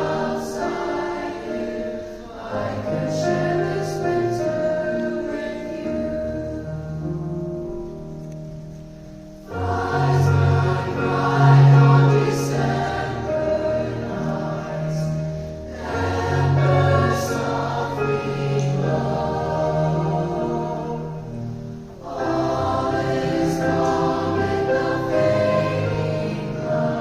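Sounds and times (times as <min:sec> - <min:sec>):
choir singing in harmony: 0:00.0 - 0:08.1, 0:09.3 - 0:27.0.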